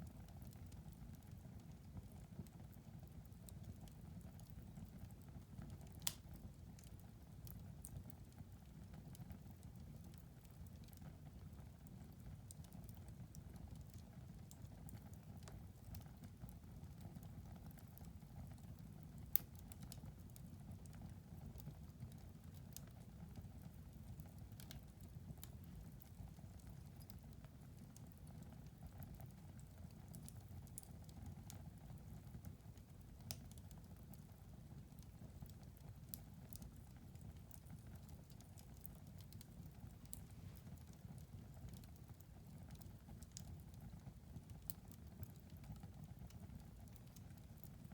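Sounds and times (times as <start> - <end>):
low rumble of flames: 0.0 - 47.9
wood fire crackling: 0.0 - 47.9.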